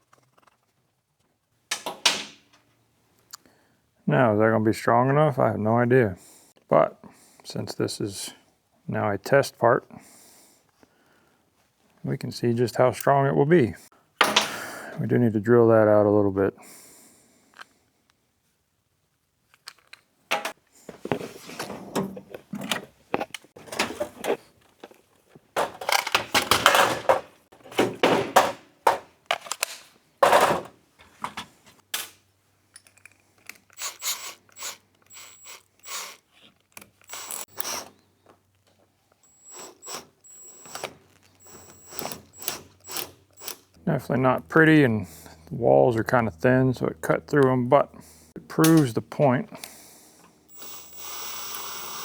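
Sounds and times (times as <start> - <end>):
power drill drilling plastic: 33.8 - 36.3, 37.0 - 38.0, 39.2 - 43.8, 50.5 - 52.0
faint steady hum: 37.0 - 52.0.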